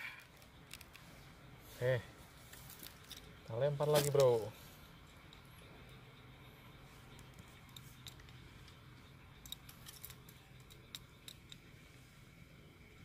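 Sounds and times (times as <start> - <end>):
faint low hum: 0.0 - 13.0
small sharp clicks: 9.4 - 11.7.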